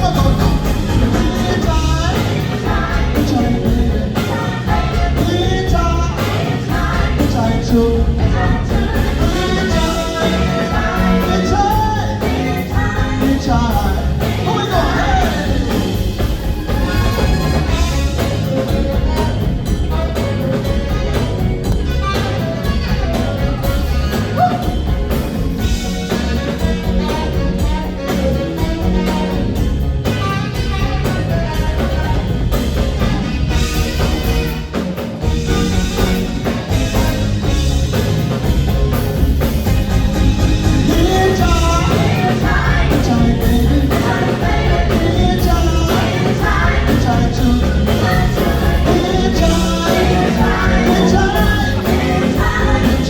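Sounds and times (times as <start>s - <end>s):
person singing: 0.0s - 16.3s, 40.8s - 53.0s
live band playing soul music: 0.0s - 53.0s.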